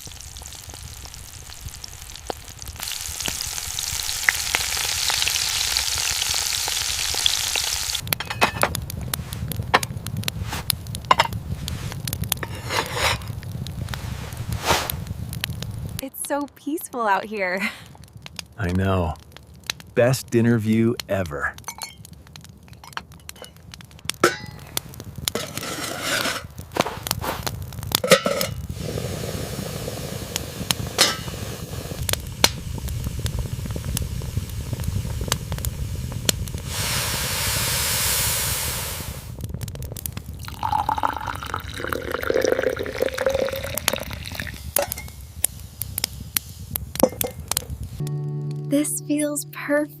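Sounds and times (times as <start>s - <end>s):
dishes and cups clinking: 8.2s - 8.7s, 21.6s - 22.0s, 31.0s - 31.3s, 47.0s - 47.4s
hiss: 11.5s - 15.1s, 28.7s - 39.5s, 43.8s - 48.0s
steady low rumble: 26.5s - 40.4s, 42.8s - 48.5s
liquid being poured: 40.4s - 45.2s.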